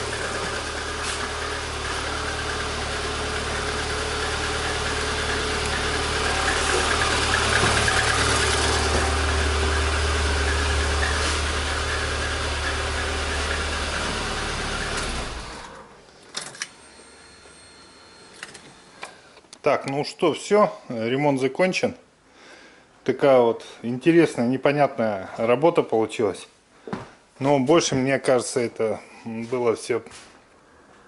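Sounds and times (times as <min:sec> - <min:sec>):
car engine idling: 0:00.0 - 0:16.1.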